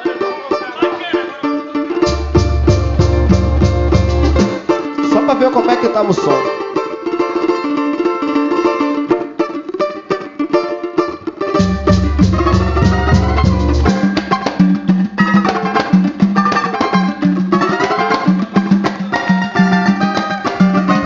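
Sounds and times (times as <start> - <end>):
instrumental samba music: 0.0 - 21.0
deep bass line: 2.0 - 4.6, 11.6 - 15.4.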